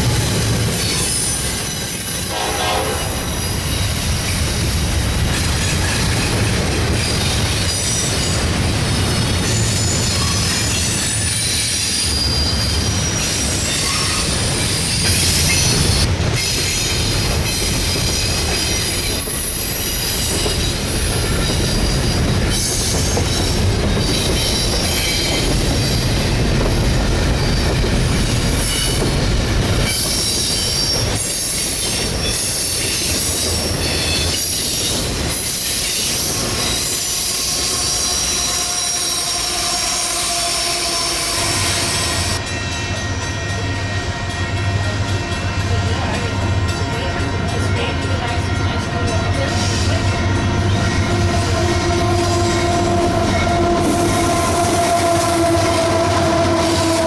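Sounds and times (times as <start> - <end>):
steel wheels squealing on rails: 0.0 - 57.0
train rumbling past: 0.0 - 57.0.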